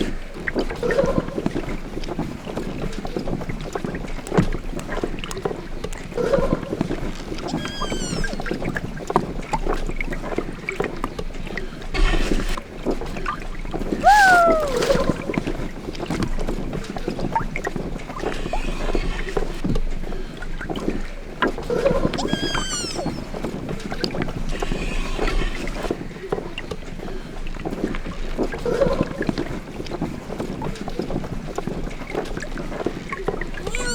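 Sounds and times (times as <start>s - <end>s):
water sloshing and lapping: 0.0s - 33.9s
high whistling calls: 7.5s - 8.4s, 14.0s - 15.2s, 22.2s - 23.3s, 33.7s - 33.9s
short falling cry: 7.6s - 8.3s, 14.0s - 15.2s, 22.2s - 23.2s, 33.7s - 33.9s.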